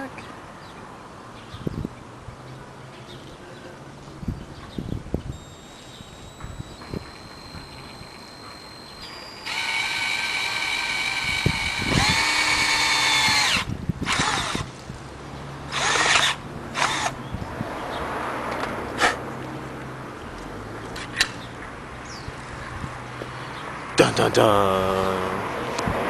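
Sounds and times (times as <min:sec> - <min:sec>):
power drill motor whining: 0:05.3 - 0:14.7, 0:15.7 - 0:17.2.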